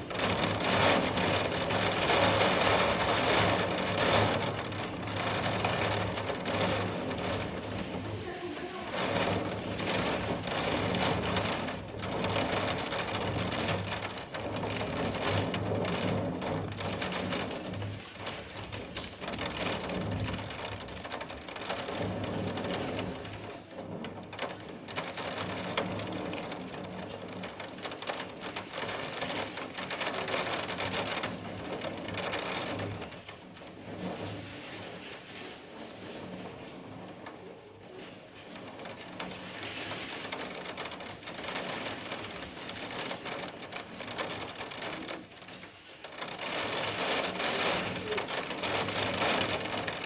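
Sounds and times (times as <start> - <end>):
rain: 0.0 - 50.0.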